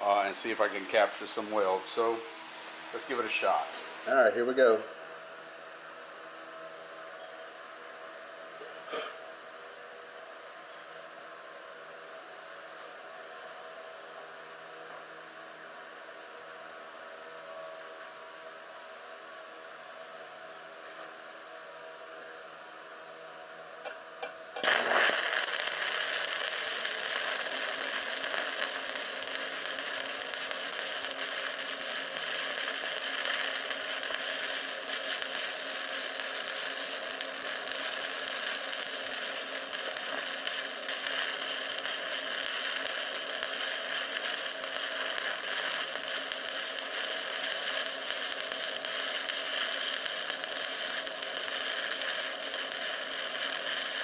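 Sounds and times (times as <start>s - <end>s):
welding arc crackling hiss: 0.0s - 5.0s, 23.8s - 54.0s
steady hum: 0.0s - 54.0s
welding rod scratch clicks: 24.6s - 54.0s.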